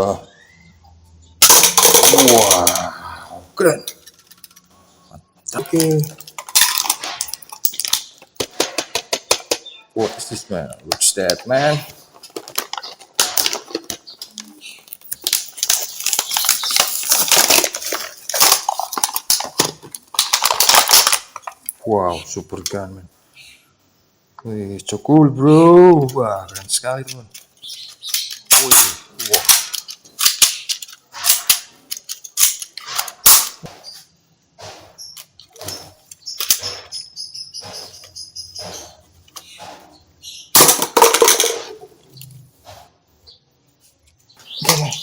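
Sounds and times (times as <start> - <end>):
clattering bursts: 1.4 - 2.9
toy gun clicking and clattering: 1.4 - 2.9, 5.6 - 9.6, 12.3 - 21.7, 26.1 - 33.6, 36.1 - 36.8.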